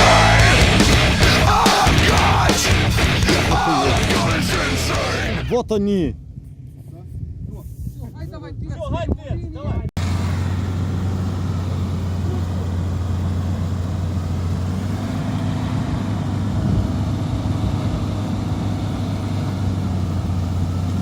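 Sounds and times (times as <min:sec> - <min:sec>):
vehicle engine running: 0:00.0 - 0:05.5, 0:10.0 - 0:21.0.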